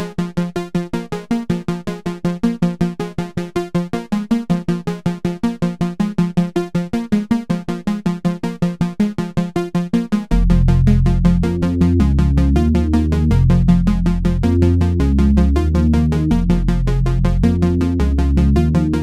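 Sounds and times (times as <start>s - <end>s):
synthesizer arpeggio: 10.3s - 19.0s.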